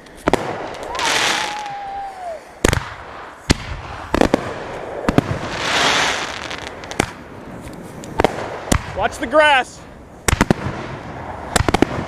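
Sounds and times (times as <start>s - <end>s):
firework bangs: 0.0s - 9.4s, 10.2s - 12.0s
fireworks crackling hiss: 0.0s - 12.0s
firework whistle falling: 0.8s - 2.5s.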